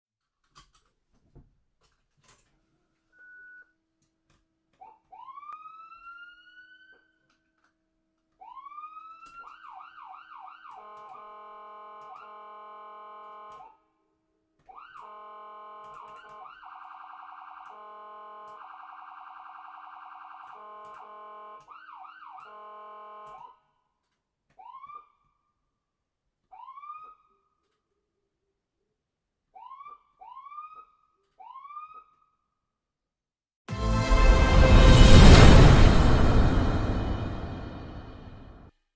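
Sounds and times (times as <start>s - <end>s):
ambulance electronic siren: 16.3s - 20.8s, 21.7s - 22.6s.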